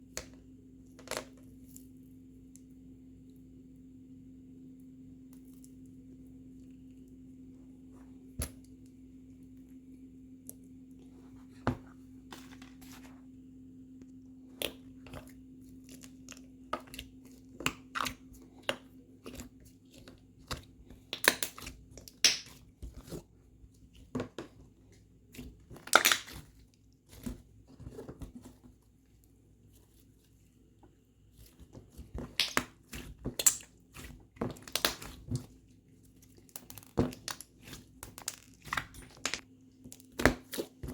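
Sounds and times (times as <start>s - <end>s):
slime crackling and crunching: 25.3s - 28.4s, 31.3s - 40.9s.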